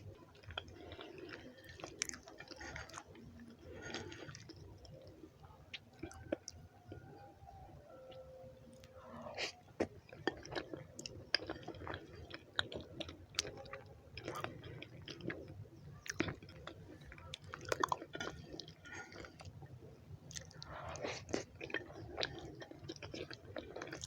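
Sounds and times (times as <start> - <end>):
chewing food: 0.0 - 24.0.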